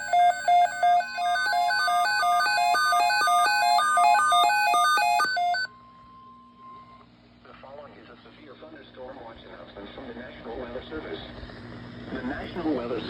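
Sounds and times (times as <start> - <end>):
multi-tone electronic warble: 0.0 - 5.7
rapid electronic beeps: 0.0 - 5.7.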